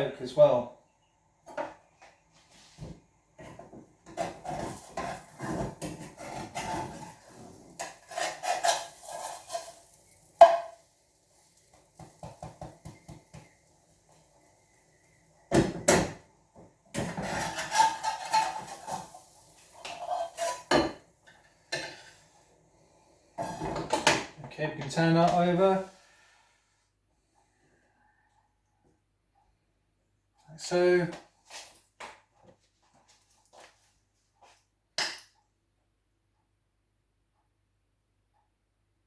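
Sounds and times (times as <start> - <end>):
spatula scraping frying pan: 4.1 - 12.5, 17.0 - 22.4, 23.4 - 24.1.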